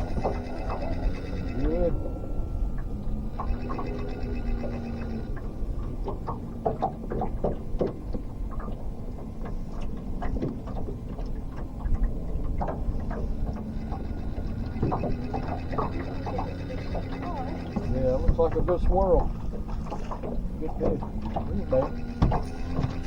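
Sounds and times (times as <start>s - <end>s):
boat motor humming: 0.0s - 23.0s
knocks and clatter of gear: 17.7s - 23.0s.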